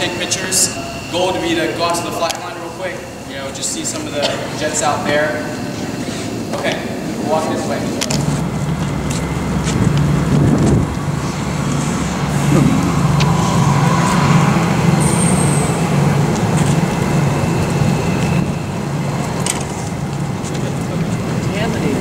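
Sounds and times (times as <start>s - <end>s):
faint high tone: 0.0s - 3.0s
mechanical drone: 0.0s - 22.0s.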